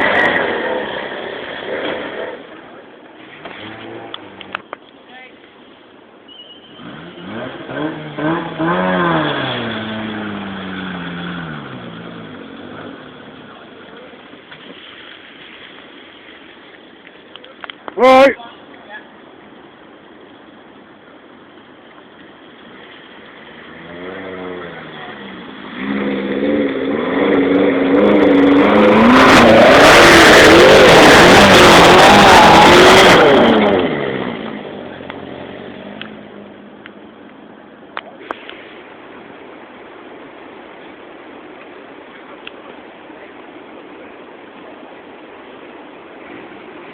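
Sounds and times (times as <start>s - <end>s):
car engine revving: 0.0s - 4.6s, 6.7s - 14.0s, 22.8s - 36.7s.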